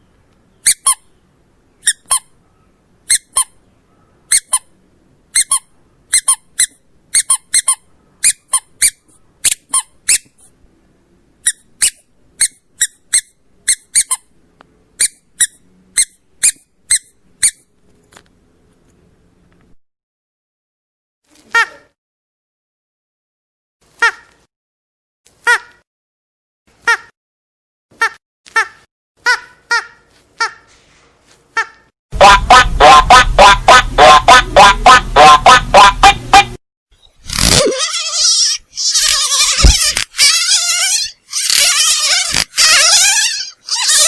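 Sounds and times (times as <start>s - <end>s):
squeaky dog toy squeaking: 0.6s - 1.1s, 1.8s - 2.4s, 3.0s - 3.6s, 4.3s - 10.5s, 11.4s - 14.3s, 15.0s - 17.7s, 28.0s - 30.7s, 31.6s - 36.6s, 37.3s - 44.0s.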